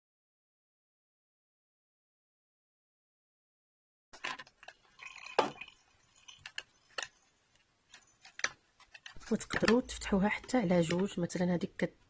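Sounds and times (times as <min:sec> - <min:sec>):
hard plastic parts clicking and knocking: 0:04.2 - 0:05.6, 0:07.9 - 0:11.3.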